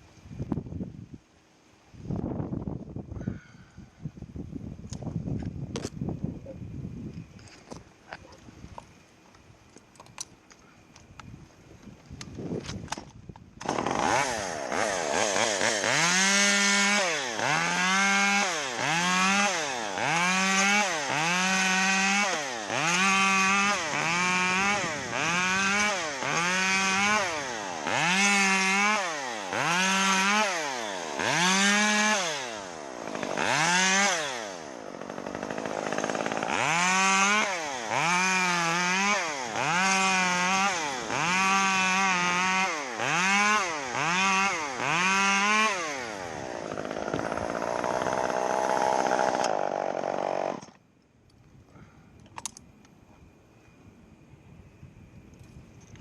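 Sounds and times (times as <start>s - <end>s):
chainsaw revving: 13.6s - 50.8s.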